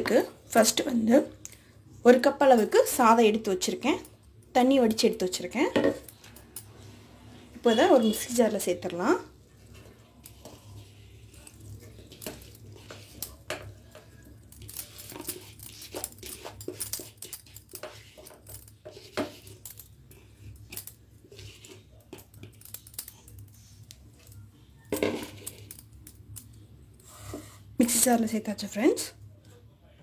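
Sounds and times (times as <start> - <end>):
kitchenware clatter: 3.7 - 6.7, 9.8 - 23.5, 24.2 - 26.1
kitchenware tapping and scraping: 4.8 - 6.8, 9.7 - 23.5, 24.2 - 25.9.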